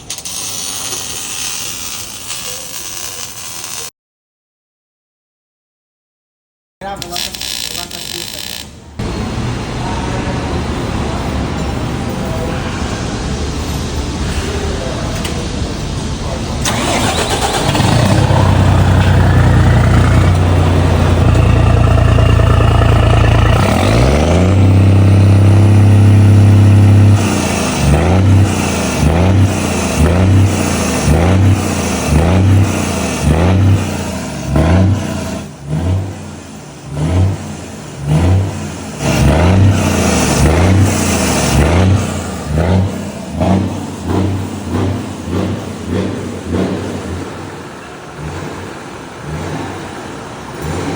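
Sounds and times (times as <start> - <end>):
truck diesel engine revving: 14.8 - 50.9.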